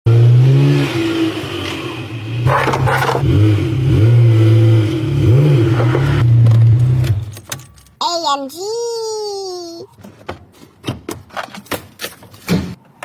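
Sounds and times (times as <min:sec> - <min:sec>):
car engine revving: 0:00.1 - 0:07.1.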